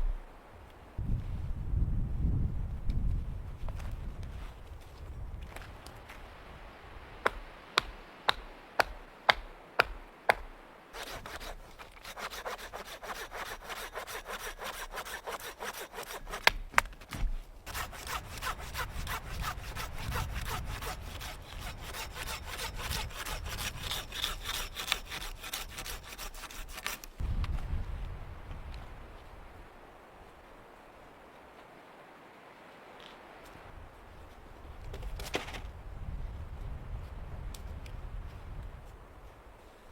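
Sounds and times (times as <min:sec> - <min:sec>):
sharp knocks on wood: 0:07.3 - 0:10.5
hand saw cutting wood: 0:07.8 - 0:27.2.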